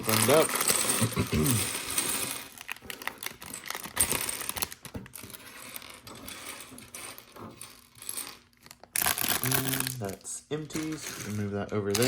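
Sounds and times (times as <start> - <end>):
plastic toy bricks rattling: 0.0 - 12.0
plastic bags opening: 2.5 - 5.3, 8.5 - 12.0.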